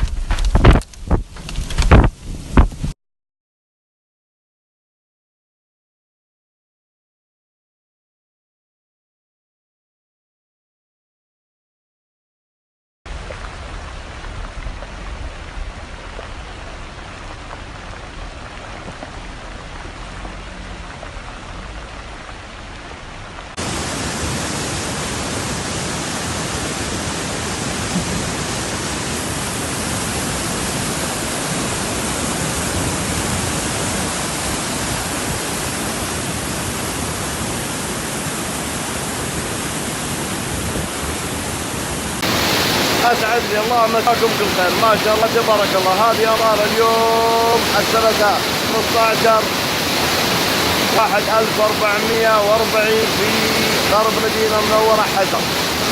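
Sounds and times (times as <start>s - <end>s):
rain falling: 13.1s - 55.9s.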